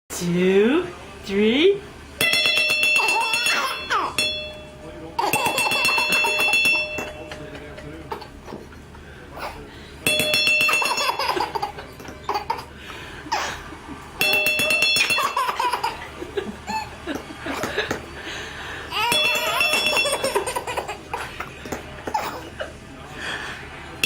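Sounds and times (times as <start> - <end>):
bell-like ringing strike: 2.2 - 7.6, 10.0 - 11.2, 14.2 - 15.5, 19.0 - 20.4
baby laughing: 10.7 - 12.7, 15.0 - 17.8, 18.9 - 22.5.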